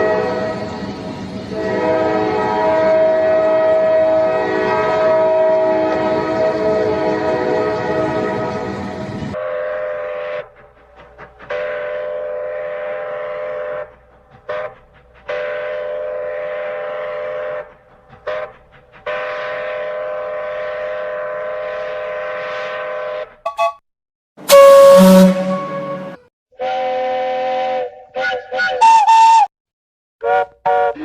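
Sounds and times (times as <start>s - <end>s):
cartoon train whistle: 0.0s - 8.7s, 9.4s - 10.6s, 11.5s - 13.9s, 14.5s - 17.7s, 19.1s - 23.8s, 24.4s - 29.5s, 30.2s - 31.0s
loud different whistle: 22.8s - 23.8s, 24.4s - 29.5s.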